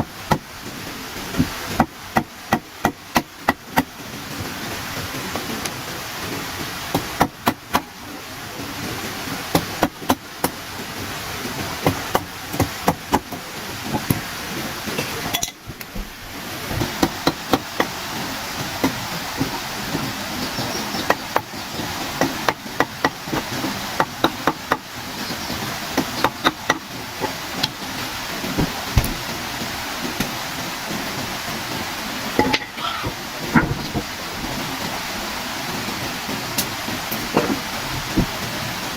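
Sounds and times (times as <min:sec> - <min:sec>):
background hiss: 0:00.0 - 0:38.9
hand tool striking wood: 0:28.6 - 0:29.2.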